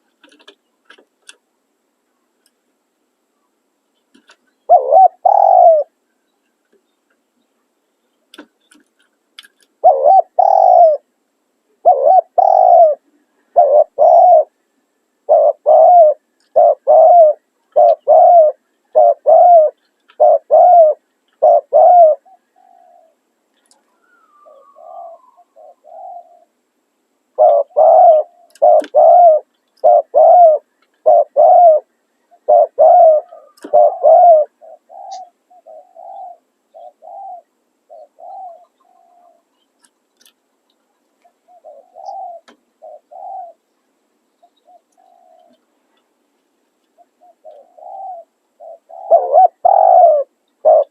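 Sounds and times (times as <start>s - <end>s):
doves cooing: 4.3s - 6.0s, 9.8s - 11.1s, 11.8s - 14.6s, 15.2s - 26.6s, 27.3s - 39.6s, 41.2s - 43.6s, 44.4s - 45.8s, 46.8s - 50.9s.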